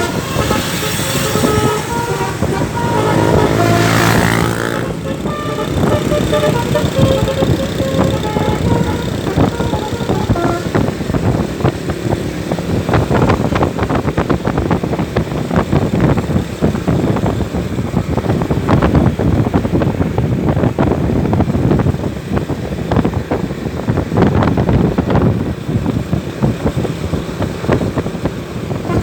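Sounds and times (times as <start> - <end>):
multi-tone bus horn: 0.0 - 12.0, 28.6 - 29.0
vehicle engine and road noise: 0.0 - 29.0.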